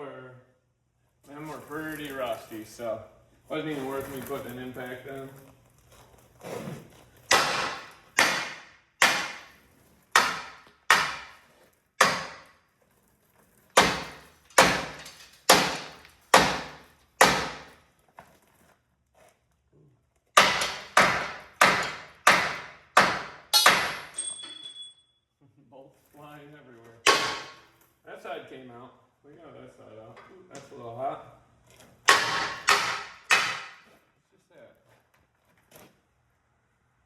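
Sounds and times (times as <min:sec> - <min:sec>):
hammer striking steel: 0:07.3 - 0:11.4, 0:12.0 - 0:12.5, 0:13.8 - 0:17.7, 0:20.4 - 0:24.9, 0:27.0 - 0:27.7, 0:32.1 - 0:33.9.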